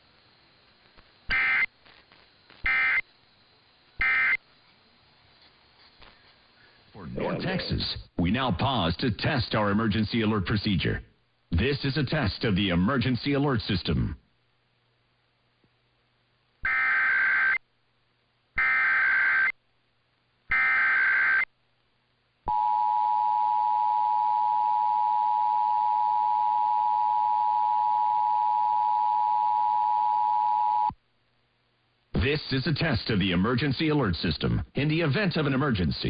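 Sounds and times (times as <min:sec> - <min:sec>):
warbling data tone bursts: 0:01.3 - 0:01.8, 0:02.6 - 0:03.0.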